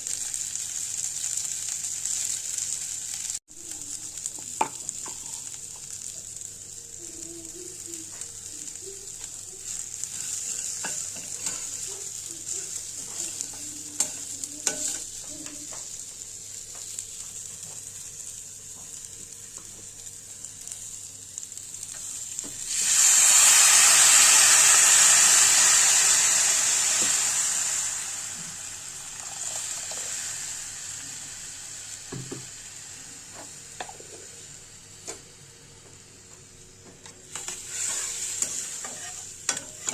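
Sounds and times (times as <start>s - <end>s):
vegetables sizzling in a pan: 0.0s - 39.9s
spatula scraping a pan: 10.0s - 15.1s, 37.3s - 39.9s.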